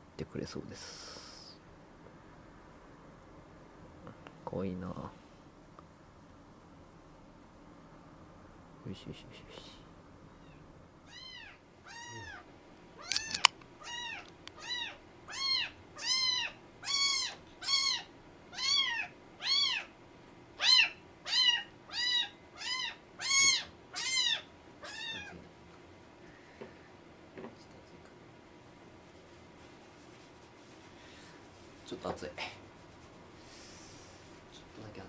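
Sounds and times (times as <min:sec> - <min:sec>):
sharp click: 0:13.1 - 0:14.5.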